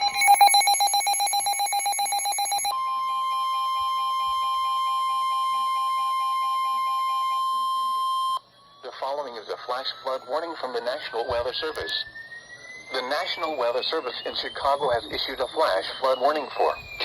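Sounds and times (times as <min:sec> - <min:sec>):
faint repeating beep: 0:00.0 - 0:02.7
fast electronic pulsing beep: 0:00.0 - 0:02.7, 0:12.7 - 0:17.0
piercing warning alarm tone: 0:00.0 - 0:17.0.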